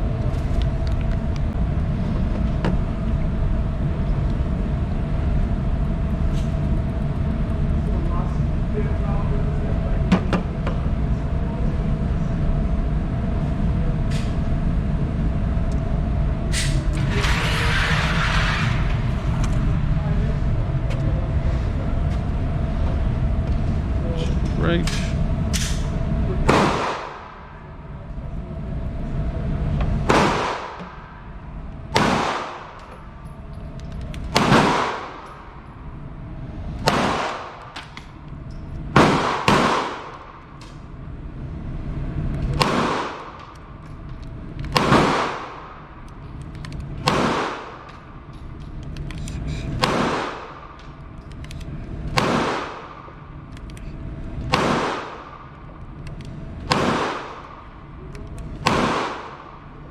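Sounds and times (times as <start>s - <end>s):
gunshots with ringing echo: 26.4s - 27.7s, 30.0s - 32.9s, 34.3s - 35.6s, 36.8s - 37.8s, 38.9s - 40.6s, 42.6s - 43.5s, 44.7s - 46.0s, 47.0s - 48.1s, 49.8s - 50.8s, 52.1s - 53.3s, 54.5s - 55.6s, 56.7s - 57.8s, 58.6s - 59.8s.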